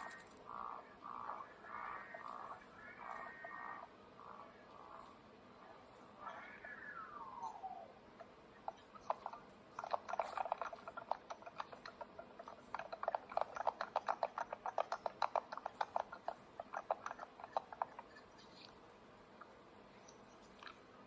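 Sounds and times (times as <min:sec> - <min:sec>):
rapid sharp clicks: 0:08.2 - 0:18.8.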